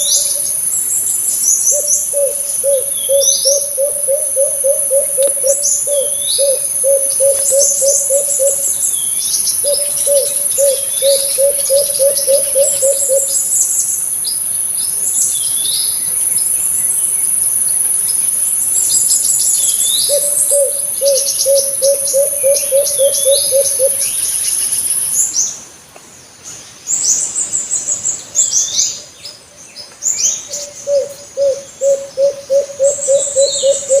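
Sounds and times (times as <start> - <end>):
small birds chirping: 0.0 - 25.6, 26.2 - 34.0
dove cooing: 1.7 - 8.9, 9.6 - 13.5, 20.1 - 24.1, 30.5 - 34.0.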